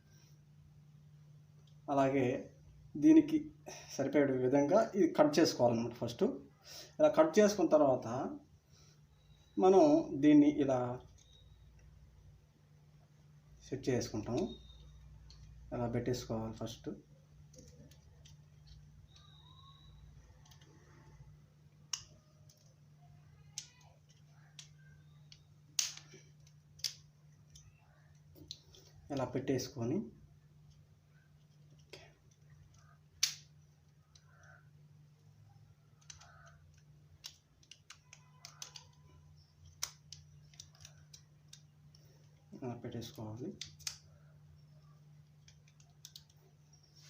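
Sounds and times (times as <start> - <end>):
low steady hum: 0.0 - 47.0
plastic parts clicking: 14.1 - 15.7, 17.4 - 21.0, 21.7 - 22.8, 23.4 - 29.4, 30.6 - 34.6, 35.9 - 46.9
plastic clicks and taps: 36.0 - 42.4.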